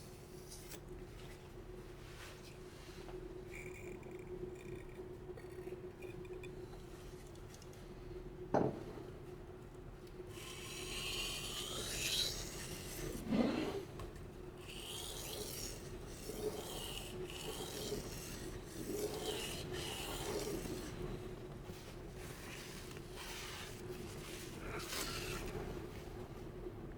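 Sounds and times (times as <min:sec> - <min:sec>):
knife scraping on whetstone: 0:10.4 - 0:13.9, 0:14.6 - 0:25.6.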